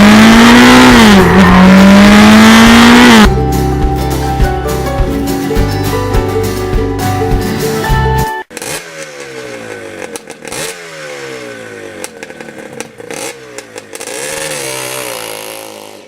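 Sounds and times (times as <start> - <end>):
motorcycle engine revving: 0.0 - 3.4, 8.5 - 16.0
guitar music: 0.0 - 8.5.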